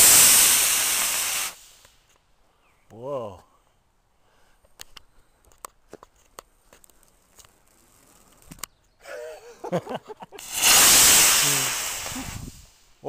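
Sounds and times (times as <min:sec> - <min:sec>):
loud rushing hiss: 0:00.0 - 0:02.1, 0:10.4 - 0:13.0.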